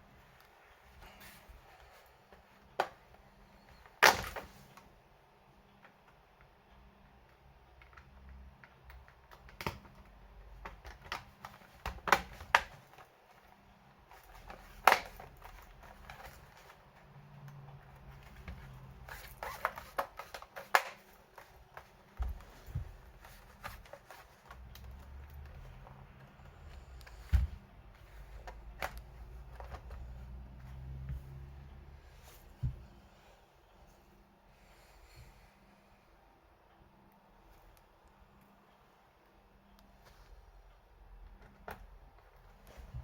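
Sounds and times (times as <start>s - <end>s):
plastic parts clicking and knocking: 7.2s - 31.2s.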